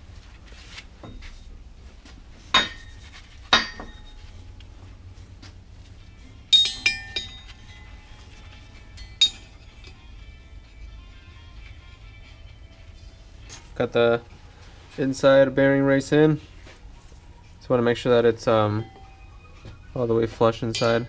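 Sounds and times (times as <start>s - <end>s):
hammer striking metal: 2.5s - 4.2s, 6.5s - 8.0s, 8.9s - 10.0s, 20.7s - 21.0s.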